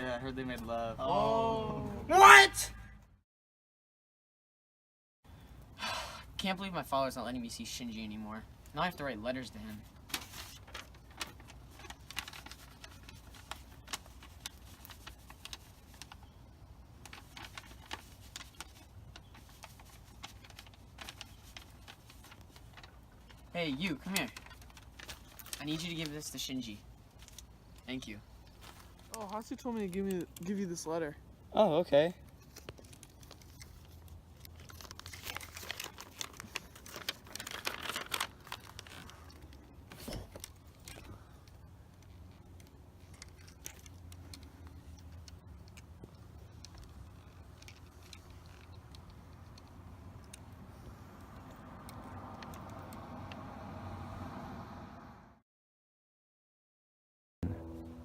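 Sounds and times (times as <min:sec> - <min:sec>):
paper crinkling and rustling: 0:08.7 - 0:30.8, 0:32.2 - 0:51.6
low steady hum: 0:57.4 - 0:58.0.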